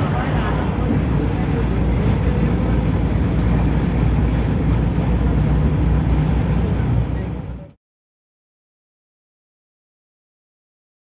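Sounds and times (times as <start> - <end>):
low rumbling noise: 0.0 - 7.8.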